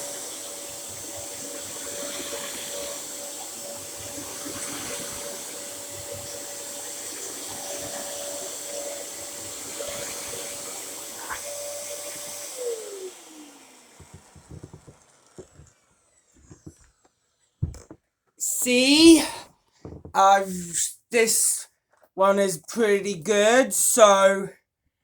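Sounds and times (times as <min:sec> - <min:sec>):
vacuum cleaner running: 0:00.0 - 0:19.4
light knocks and clicks: 0:14.0 - 0:15.8, 0:17.6 - 0:18.0.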